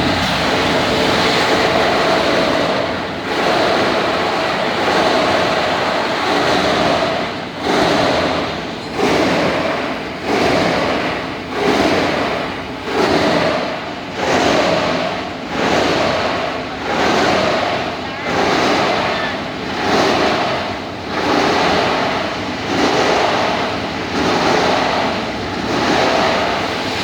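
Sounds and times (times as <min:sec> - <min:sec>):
grinding machinery rushing noise: 0:00.0 - 0:27.0.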